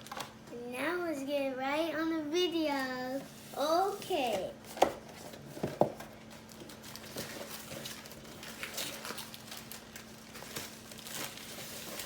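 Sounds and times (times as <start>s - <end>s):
packaging clicks and rustles: 4.7s - 12.0s.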